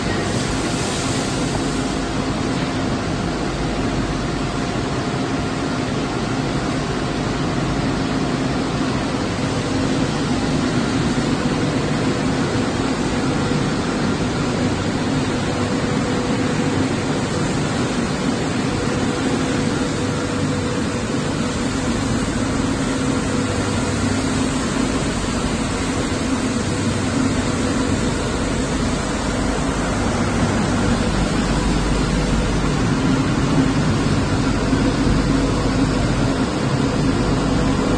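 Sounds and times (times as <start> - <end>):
water spray: 0.1 - 2.2
low steady hum: 1.4 - 37.9
machine motors and blowers rushing: 7.1 - 37.9.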